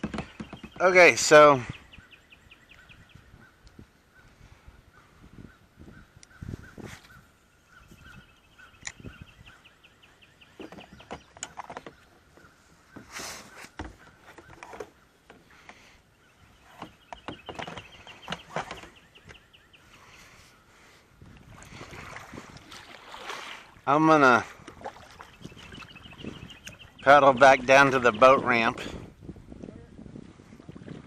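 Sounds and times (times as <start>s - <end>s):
faint bird calls: 0.0s - 21.1s, 24.5s - 27.9s
kayak paddle splashing: 9.6s - 28.7s.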